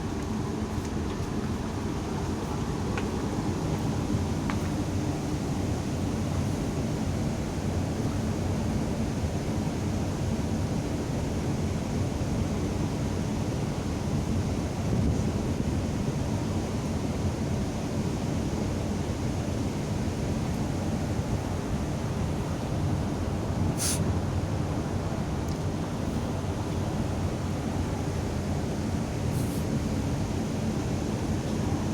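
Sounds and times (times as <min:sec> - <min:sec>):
rush of the sea: 0:00.0 - 0:31.9
ship engine rumble: 0:19.5 - 0:31.9.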